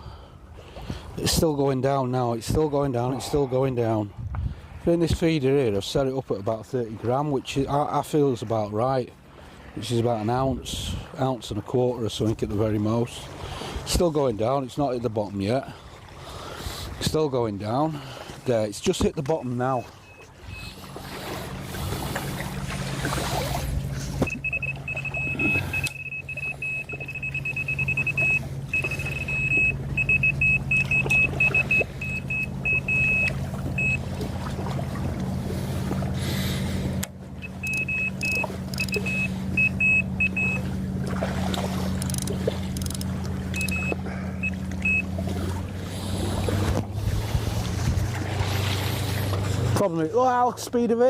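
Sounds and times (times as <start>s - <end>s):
low motor hum: 19.1s - 49.9s
high-pitched electronic beeps: 19.8s - 20.8s, 24.3s - 34.0s, 37.4s - 40.6s, 43.6s - 45.1s.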